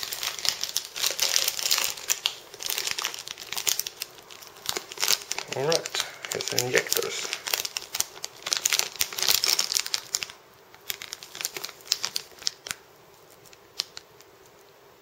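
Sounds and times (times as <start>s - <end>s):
packaging crinkling: 0.0s - 14.7s.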